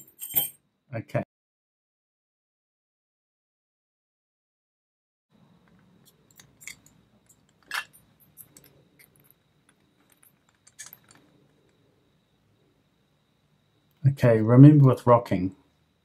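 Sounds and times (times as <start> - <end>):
metal tools clicking in lock: 6.3 - 9.3, 10.1 - 11.2.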